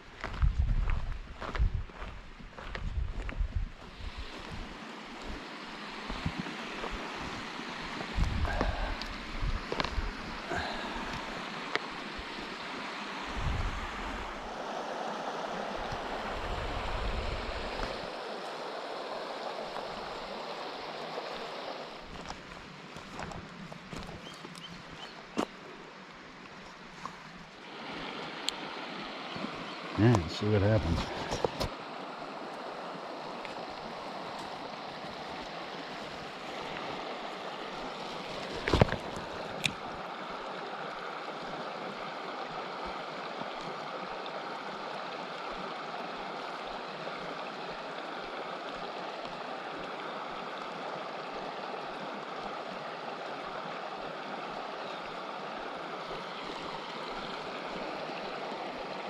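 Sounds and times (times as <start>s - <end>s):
water rushing over rocks: 3.8s - 59.0s.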